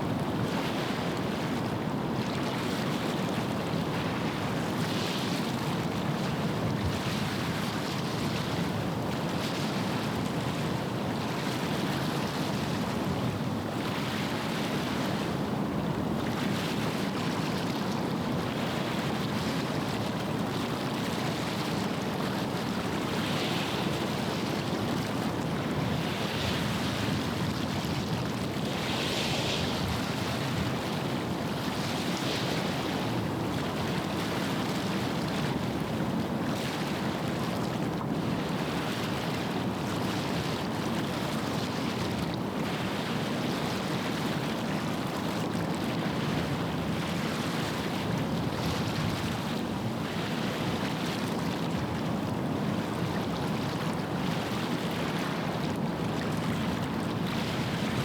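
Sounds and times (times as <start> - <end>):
waves washing on shore: 21.6 - 58.0.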